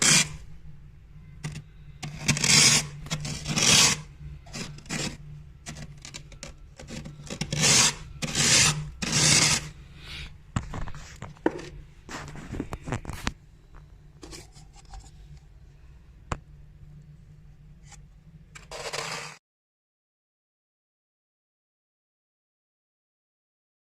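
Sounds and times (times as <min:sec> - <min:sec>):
glass scraping freezer frost: 0:00.0 - 0:00.4, 0:01.4 - 0:09.8, 0:18.6 - 0:19.4
low steady hum: 0:00.0 - 0:19.2.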